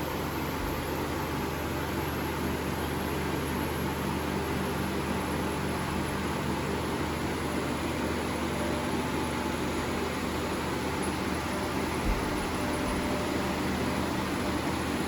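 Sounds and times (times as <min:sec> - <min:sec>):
low motor hum: 0:08.6 - 0:15.0.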